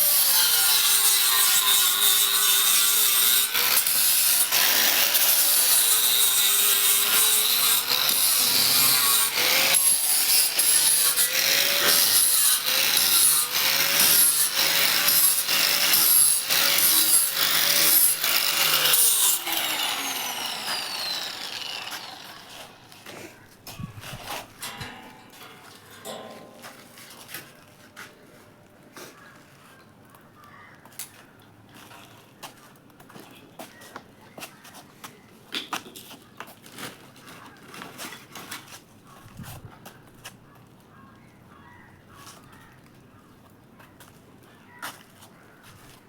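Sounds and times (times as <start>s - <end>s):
angle grinder grinding metal: 0.0s - 23.2s, 24.0s - 27.3s.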